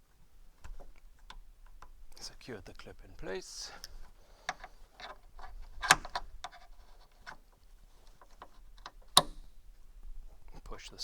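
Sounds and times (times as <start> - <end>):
metal clip clicking: 8.8 - 9.5.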